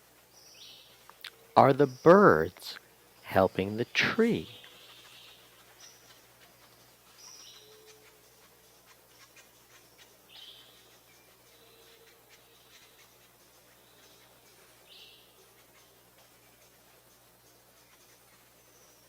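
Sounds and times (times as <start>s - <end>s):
high bird chirps: 0.4s - 19.0s
faint ticks: 1.0s - 1.4s.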